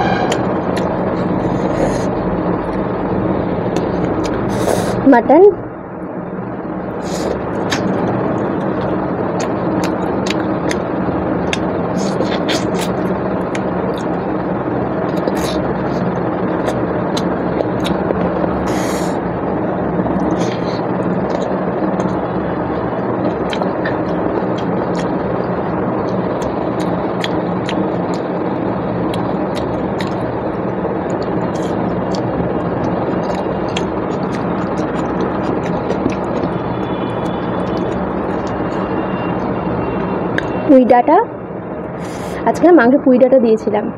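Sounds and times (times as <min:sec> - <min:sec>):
loud steady hum: 0:00.0 - 0:43.9
mouth clicks and smacks: 0:03.7 - 0:05.0, 0:07.0 - 0:10.8, 0:11.4 - 0:14.2, 0:15.1 - 0:19.2, 0:20.1 - 0:22.2, 0:23.2 - 0:25.2, 0:26.1 - 0:28.4, 0:29.1 - 0:30.3, 0:31.1 - 0:39.5, 0:40.3 - 0:40.6
food being chewed: 0:07.0 - 0:10.8, 0:11.4 - 0:14.2, 0:15.1 - 0:19.1, 0:20.1 - 0:22.2, 0:23.2 - 0:25.2, 0:26.1 - 0:28.3, 0:29.1 - 0:30.3, 0:31.1 - 0:39.5.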